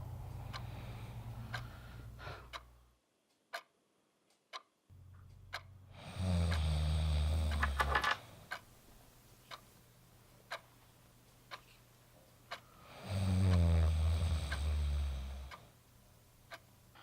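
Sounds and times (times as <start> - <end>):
clock ticking: 0.1 - 9.8, 10.4 - 11.7, 12.3 - 12.8, 13.5 - 17.0
loud rasping snore: 13.0 - 15.5.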